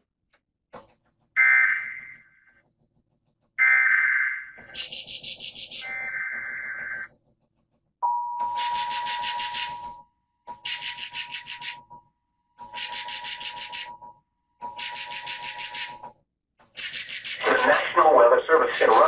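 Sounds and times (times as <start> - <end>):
two-tone alert signal: 3.6 - 7.1, 8.0 - 11.9, 12.6 - 14.0, 14.6 - 16.0.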